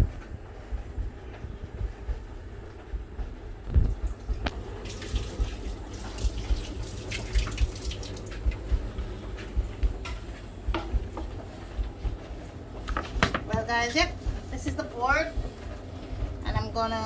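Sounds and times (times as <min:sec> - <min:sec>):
tap running into sink: 0:04.8 - 0:08.6.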